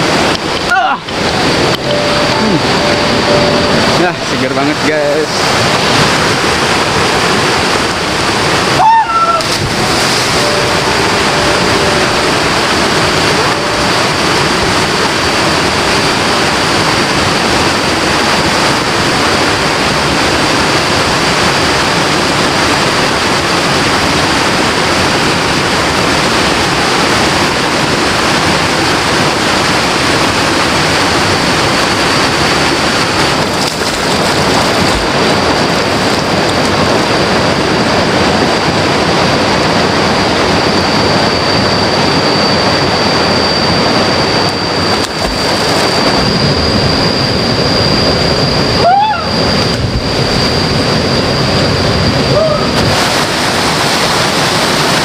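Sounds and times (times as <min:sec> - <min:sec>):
river water rushing: 0:00.0 - 0:40.6, 0:43.9 - 0:47.6, 0:52.3 - 0:55.0
thin high-pitched tone: 0:01.7 - 0:04.6, 0:09.0 - 0:14.4.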